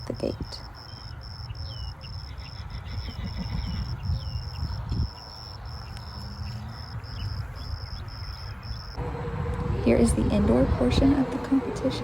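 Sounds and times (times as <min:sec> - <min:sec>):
insect chirping: 0:00.0 - 0:09.1
wind rumbling on microphone: 0:00.0 - 0:12.0.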